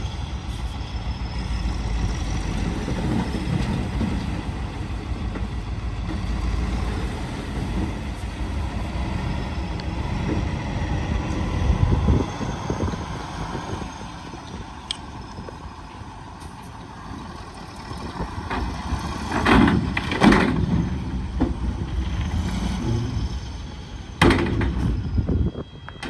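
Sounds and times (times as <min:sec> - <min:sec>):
bulldozer engine rumbling: 0:00.0 - 0:26.0
loud metal clanks: 0:18.5 - 0:25.2.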